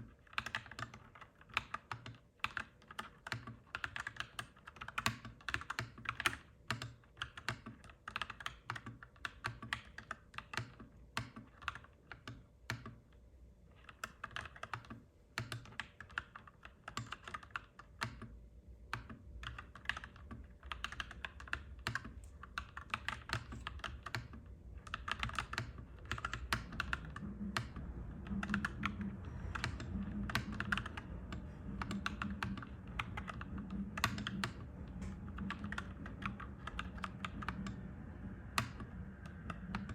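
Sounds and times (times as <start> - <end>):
mechanical keyboard typing: 0.0 - 13.1, 13.7 - 39.9
low rumble: 23.5 - 39.9
pulsing hum: 24.5 - 39.9.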